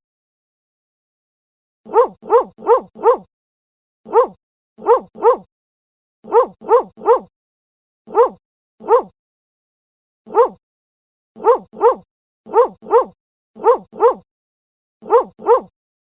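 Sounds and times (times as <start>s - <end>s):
dog barking: 1.9s - 3.3s, 4.1s - 5.5s, 6.2s - 7.3s, 8.1s - 9.1s, 10.3s - 10.6s, 11.4s - 14.3s, 15.0s - 15.7s.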